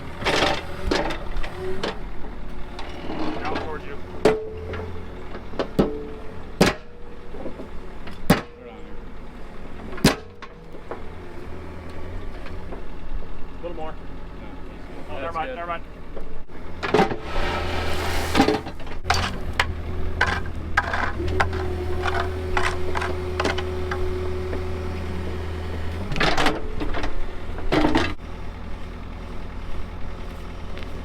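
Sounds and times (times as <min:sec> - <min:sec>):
heavy equipment engine humming: 0:00.0 - 0:31.0
clanks of stone and metal: 0:02.8 - 0:08.6.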